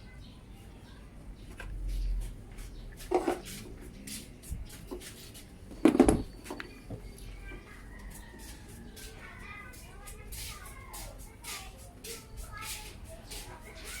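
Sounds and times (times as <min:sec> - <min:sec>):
hard objects clattering and knocking: 0:05.8 - 0:07.0.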